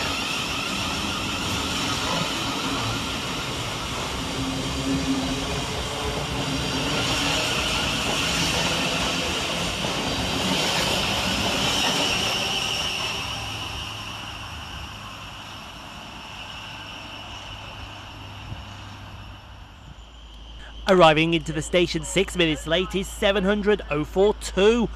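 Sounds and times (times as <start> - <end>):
train wheels rumbling on rails: 0.0 - 24.9.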